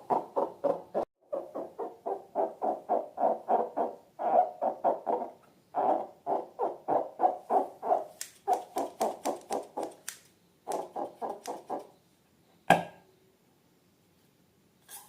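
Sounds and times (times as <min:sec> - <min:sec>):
sharp click: 0:08.2 - 0:11.6.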